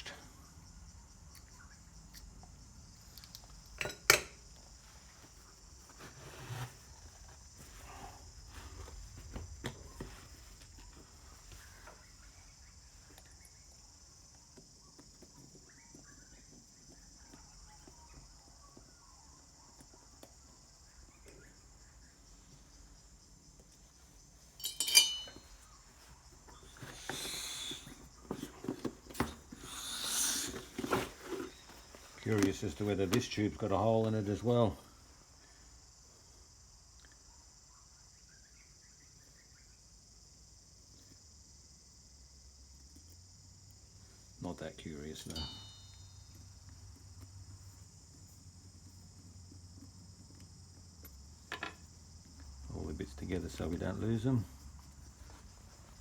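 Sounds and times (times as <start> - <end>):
crickets chirring: 0.0 - 56.0
metal parts rattling clatter: 24.6 - 25.4
small metal parts clicking: 24.6 - 25.5.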